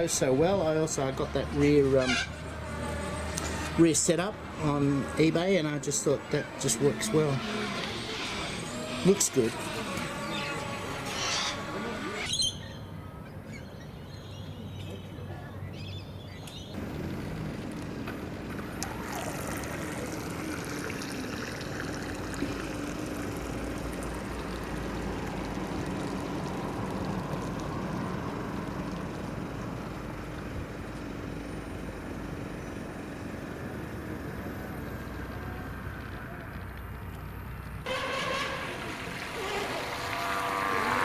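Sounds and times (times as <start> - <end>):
model boat motor drone: 0.0 - 12.6, 16.8 - 37.3, 37.9 - 41.0
water rushing off hull: 18.4 - 30.0, 37.9 - 41.0.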